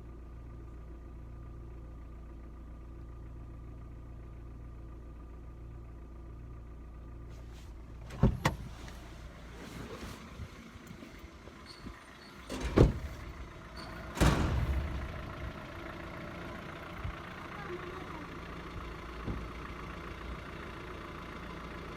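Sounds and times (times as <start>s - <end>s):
car engine idling: 0.0s - 21.9s
loud thumps: 14.0s - 15.6s.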